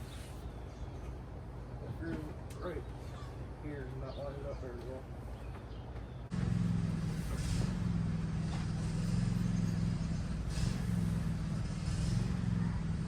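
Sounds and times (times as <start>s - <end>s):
vehicle engine idling: 6.1s - 13.0s.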